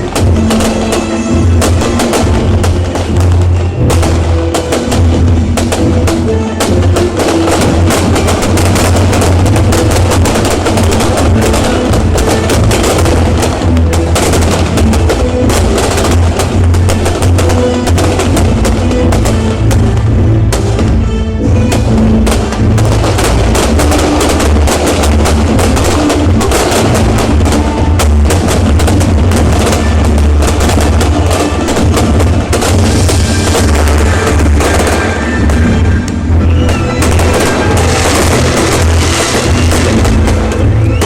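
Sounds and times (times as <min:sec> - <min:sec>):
loud percussive music: 0:00.0 - 0:41.0.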